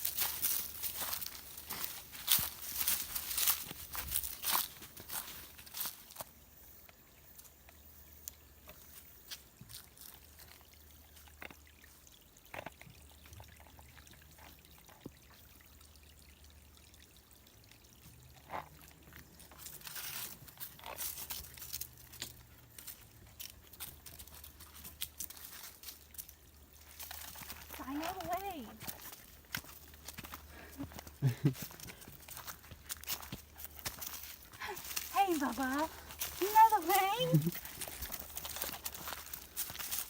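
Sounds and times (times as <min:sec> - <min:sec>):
footsteps on dry leaves: 0:00.0 - 0:06.3, 0:22.8 - 0:40.0.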